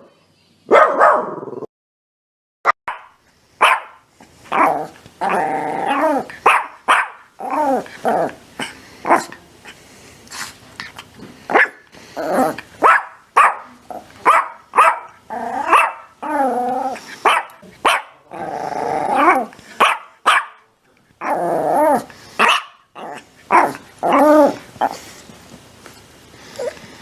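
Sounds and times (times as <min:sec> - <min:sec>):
dog barking: 0:00.7 - 0:01.4, 0:02.9 - 0:04.7, 0:06.4 - 0:07.3, 0:11.5 - 0:11.8, 0:12.8 - 0:16.1, 0:17.2 - 0:18.2, 0:19.8 - 0:20.7, 0:22.4 - 0:22.8.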